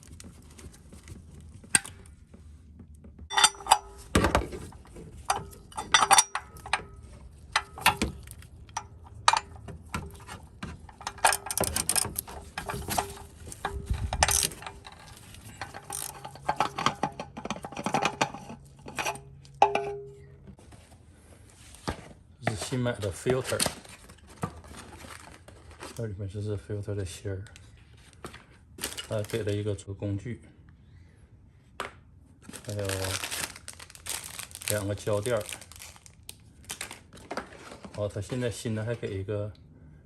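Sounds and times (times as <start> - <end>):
tool clinks: 3.3 - 20.3.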